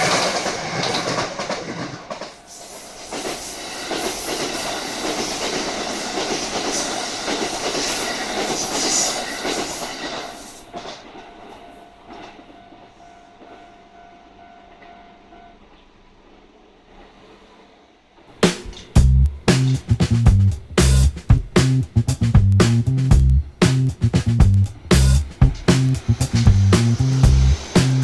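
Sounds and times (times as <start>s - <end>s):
train wheels clacking over rail joints: 0.0s - 9.9s, 18.4s - 28.0s
electric train passing: 0.0s - 11.6s, 23.0s - 28.0s.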